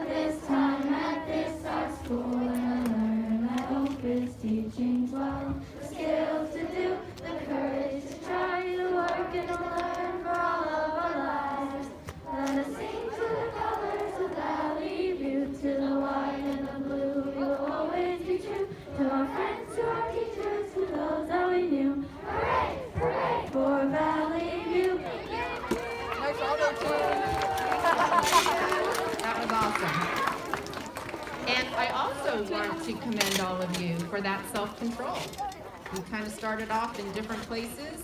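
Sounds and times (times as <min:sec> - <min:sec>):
children singing together: 0:00.0 - 0:25.7.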